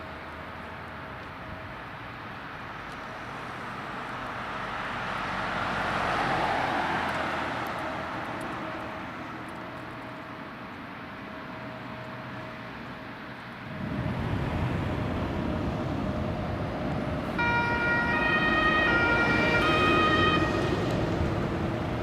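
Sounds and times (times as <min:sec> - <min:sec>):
vehicle passing by: 0:03.5 - 0:08.9, 0:13.6 - 0:22.0.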